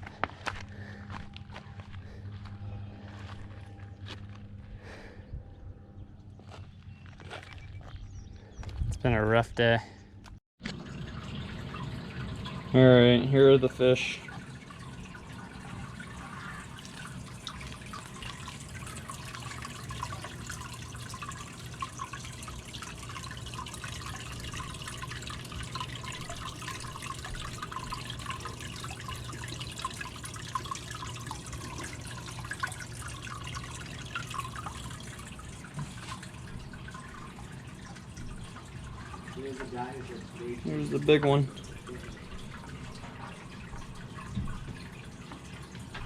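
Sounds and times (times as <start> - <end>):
aquarium water trickling: 10.6 - 46.0.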